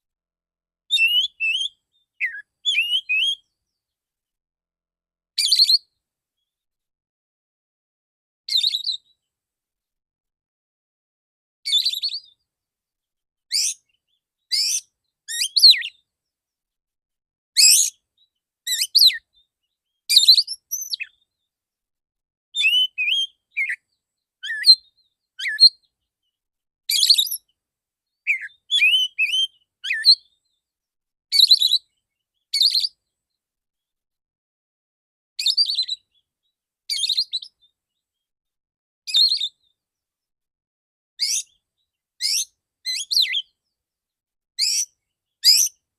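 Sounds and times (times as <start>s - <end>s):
bird singing whistled phrases: 0.9s - 3.5s, 5.4s - 5.9s, 8.5s - 9.1s, 11.7s - 12.4s, 13.5s - 13.8s, 14.5s - 15.9s, 17.6s - 17.9s, 18.7s - 19.2s, 20.1s - 21.2s, 22.6s - 23.8s, 24.4s - 25.8s, 26.9s - 27.4s, 28.3s - 30.3s, 31.3s - 31.8s, 32.6s - 33.0s, 35.4s - 36.1s, 36.9s - 37.6s, 39.1s - 39.6s, 41.2s - 41.5s, 42.2s - 43.5s, 44.6s - 45.8s.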